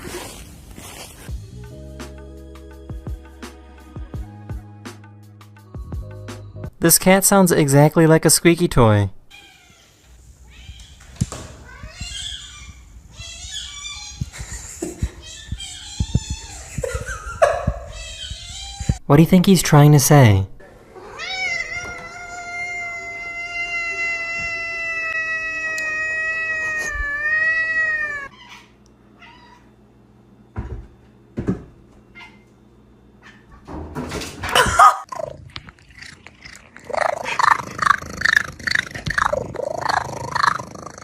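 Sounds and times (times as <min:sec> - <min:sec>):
cat meowing: 0:09.3 - 0:11.0, 0:11.6 - 0:14.4, 0:15.2 - 0:16.7, 0:17.7 - 0:19.0, 0:21.0 - 0:29.7
cat yowling: 0:09.3 - 0:11.0, 0:11.6 - 0:14.4, 0:15.2 - 0:16.7, 0:17.7 - 0:19.0, 0:21.0 - 0:29.7, 0:34.6 - 0:41.0.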